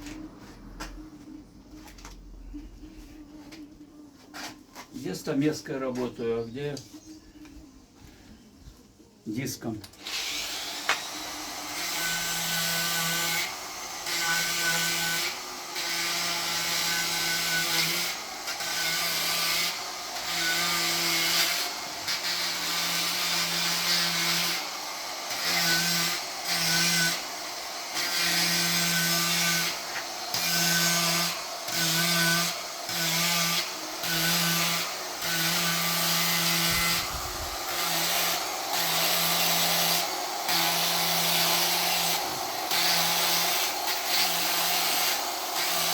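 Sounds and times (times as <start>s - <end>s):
grinder carving wood: 10.0s - 45.9s.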